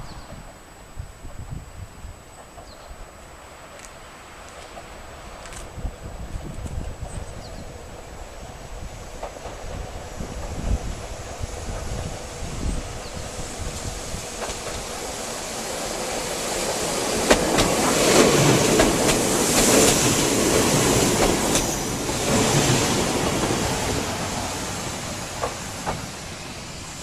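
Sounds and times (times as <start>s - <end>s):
electric train passing: 0.0s - 27.0s
train wheels clacking over rail joints: 8.4s - 26.5s.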